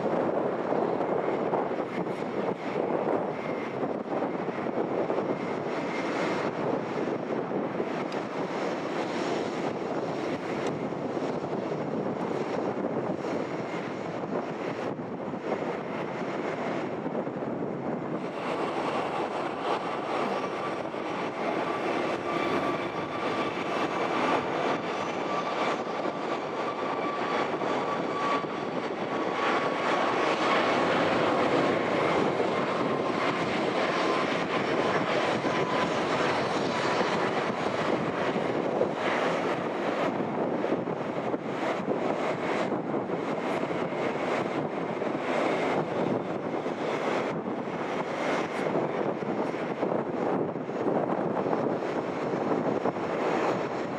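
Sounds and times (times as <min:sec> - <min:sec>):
jet engines running: 0:00.0 - 0:53.9.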